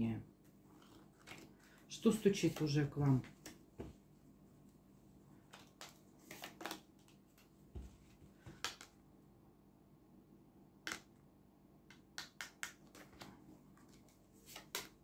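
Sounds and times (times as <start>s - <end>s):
cards clicking and flicking: 8.5s - 9.0s.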